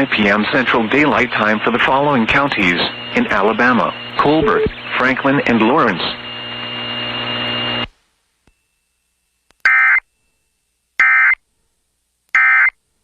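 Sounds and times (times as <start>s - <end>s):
radio hiss with faint whine: 0.0s - 8.6s
shrill buzzing data bursts: 1.4s - 7.8s.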